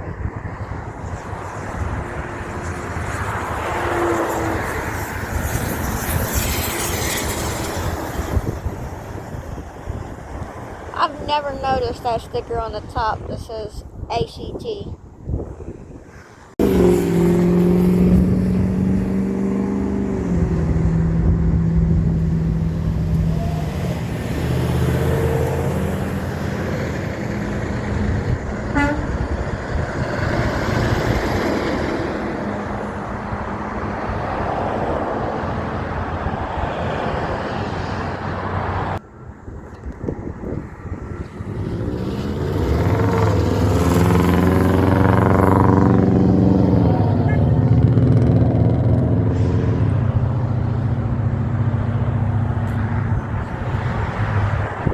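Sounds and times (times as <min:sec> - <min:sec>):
engine and tyre noise: 0:00.0 - 0:14.1, 0:15.0 - 0:54.9
trucks driving past: 0:00.0 - 0:54.9
pitched tone dropping in pitch: 0:16.6 - 0:24.2, 0:44.6 - 0:50.3.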